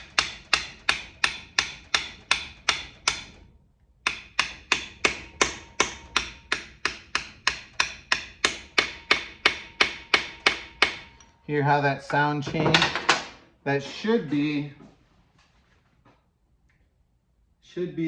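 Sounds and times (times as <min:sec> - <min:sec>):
rapid metal tapping: 0:00.0 - 0:03.4, 0:04.0 - 0:11.3.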